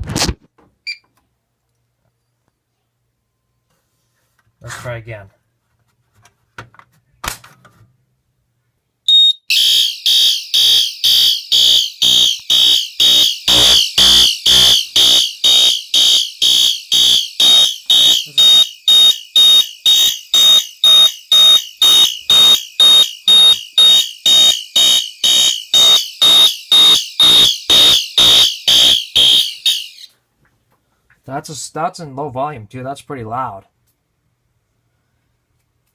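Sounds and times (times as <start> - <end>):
fire alarm horn pulses: 9.1 - 30.1
steady high tone: 9.1 - 30.1.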